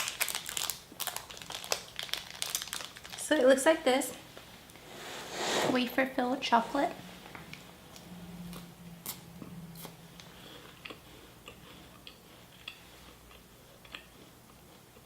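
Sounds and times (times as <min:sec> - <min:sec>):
person chewing wafer bar: 0:00.0 - 0:03.2, 0:07.9 - 0:15.0.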